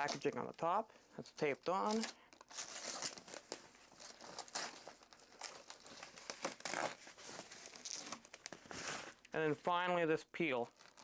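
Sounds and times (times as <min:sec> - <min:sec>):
packaging crinkling and tearing: 0:01.3 - 0:09.4, 0:10.5 - 0:11.0.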